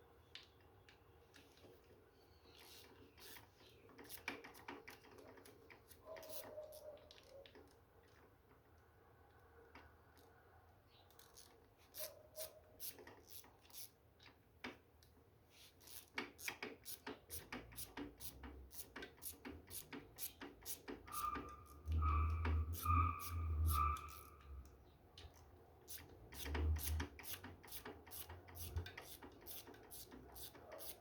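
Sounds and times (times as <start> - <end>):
hand tools clicking on metal: 16.0 - 31.0.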